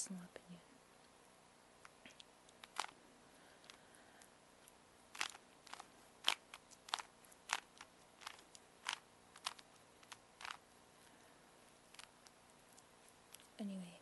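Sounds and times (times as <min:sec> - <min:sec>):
plastic puzzle cube clacking: 0:02.6 - 0:03.0, 0:05.1 - 0:10.6.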